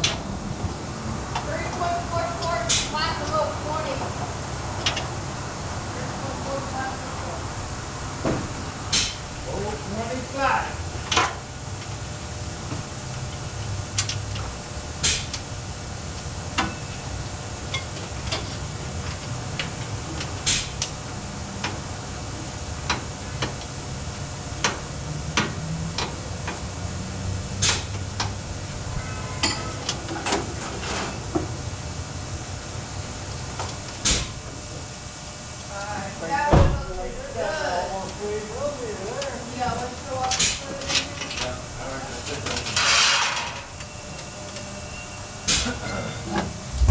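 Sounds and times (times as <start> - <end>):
low hum: 46.5 - 46.9.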